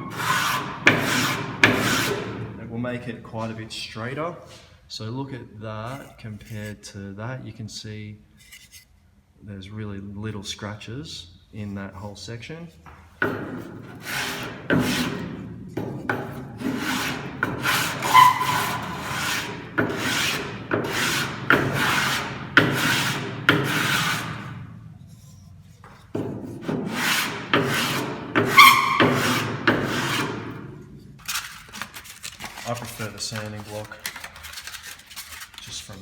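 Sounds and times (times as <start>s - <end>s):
sandpaper rasping on wood: 0.1s - 2.3s, 14.0s - 15.3s, 16.6s - 24.5s, 26.6s - 30.5s.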